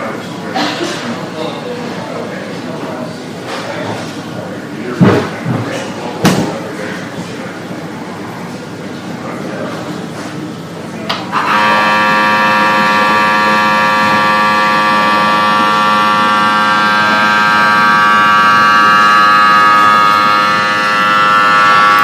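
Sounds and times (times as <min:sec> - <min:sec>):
buzzing alarm tone: 0:11.2 - 0:22.0.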